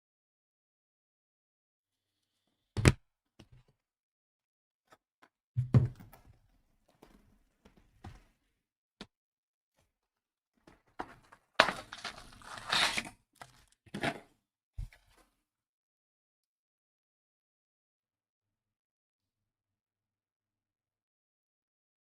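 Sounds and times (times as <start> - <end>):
thunks on a tabletop: 5.6 - 6.1.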